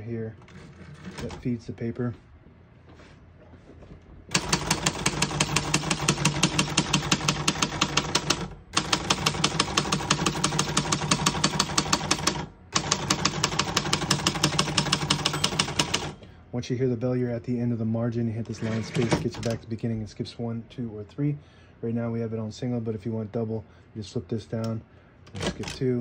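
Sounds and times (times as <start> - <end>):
typewriter keys typing: 4.3 - 16.2.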